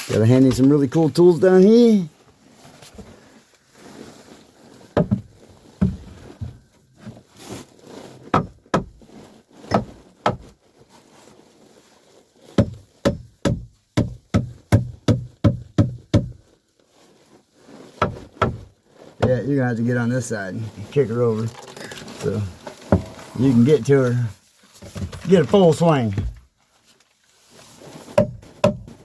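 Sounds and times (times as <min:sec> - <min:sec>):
hammer striking wood: 0:05.0 - 0:06.0, 0:08.3 - 0:09.0, 0:12.6 - 0:16.4, 0:18.0 - 0:18.7, 0:22.9 - 0:23.2, 0:28.2 - 0:29.0.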